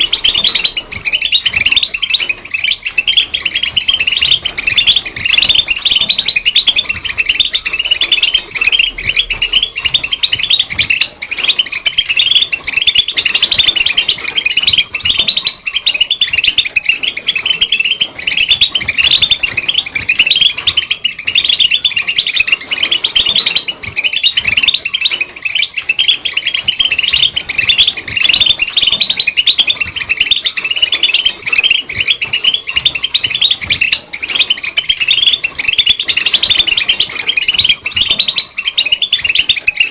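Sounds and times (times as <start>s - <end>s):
goldfinch twittering song: 0.0s - 39.9s.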